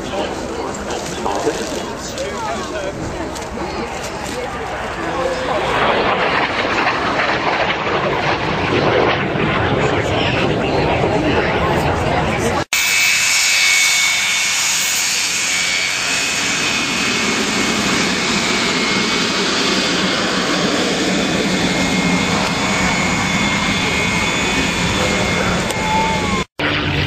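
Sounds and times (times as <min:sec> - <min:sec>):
jet engines roaring with turbine whine: 0:00.0 - 0:27.0.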